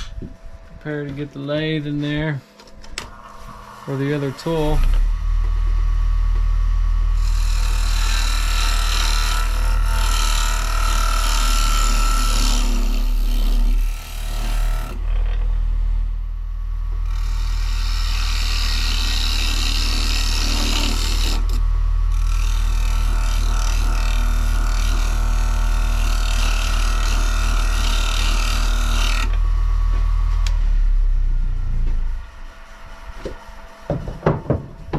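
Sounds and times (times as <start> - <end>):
lathe humming: 0.0 - 6.5, 7.1 - 34.9
turning tool scraping wood: 7.2 - 15.4, 17.1 - 29.4.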